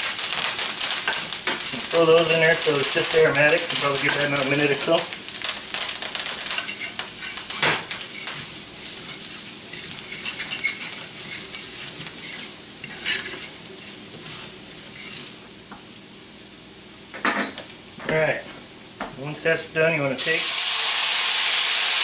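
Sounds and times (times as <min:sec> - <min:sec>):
utensil scraping a pan: 0:00.0 - 0:15.4
food sizzling in butter: 0:00.0 - 0:16.2, 0:20.2 - 0:22.0.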